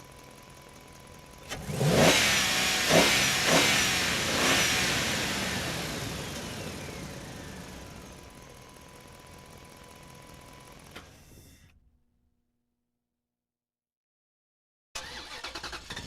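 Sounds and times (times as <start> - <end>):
engine revving: 1.4 - 8.4, 15.0 - 16.0.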